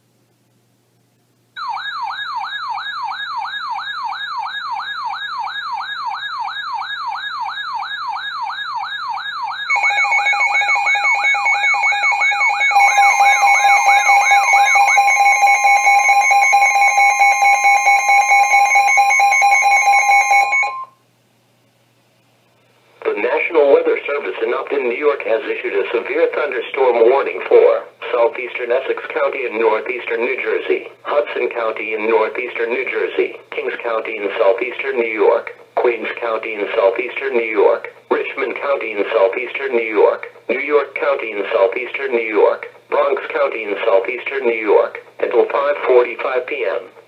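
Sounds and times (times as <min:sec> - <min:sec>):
electronic siren sweeping: 0:01.6 - 0:20.9
steady alarm tones: 0:01.6 - 0:21.0.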